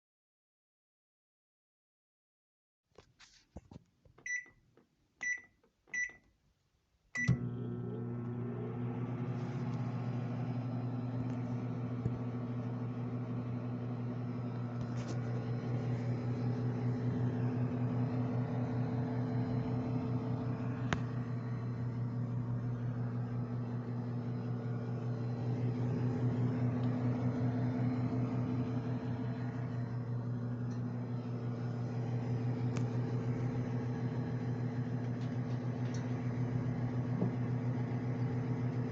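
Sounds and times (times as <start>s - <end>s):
microwave keypad beeps: 4.3s - 4.6s, 5.2s - 6.2s, 7.2s - 7.5s
microwave oven click: 7.2s - 38.9s
microwave oven humming: 7.2s - 38.9s.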